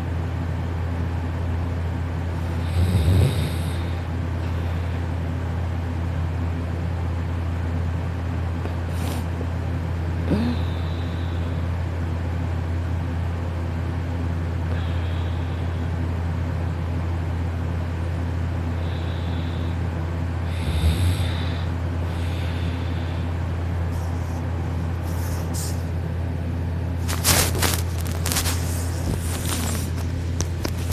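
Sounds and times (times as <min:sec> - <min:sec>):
steady low hum: 0:00.0 - 0:30.9
sleeping person breathing: 0:02.4 - 0:05.1, 0:10.2 - 0:11.7, 0:14.6 - 0:16.0, 0:18.7 - 0:25.9, 0:27.0 - 0:30.1.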